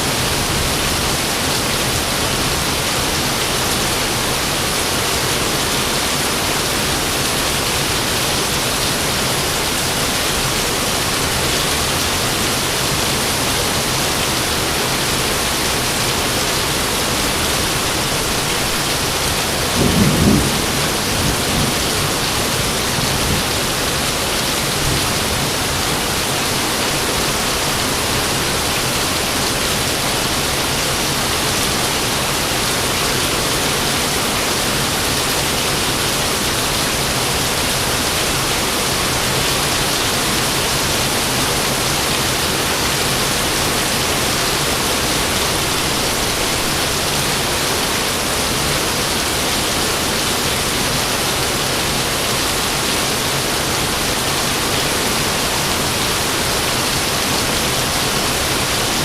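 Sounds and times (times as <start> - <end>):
rain hissing: 0.1 - 59.0
thunder rumble: 19.4 - 24.0.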